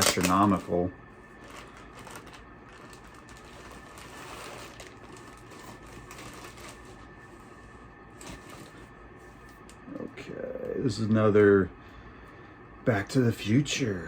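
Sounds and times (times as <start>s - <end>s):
comic books rustling in plastic bags: 0.0s - 9.8s.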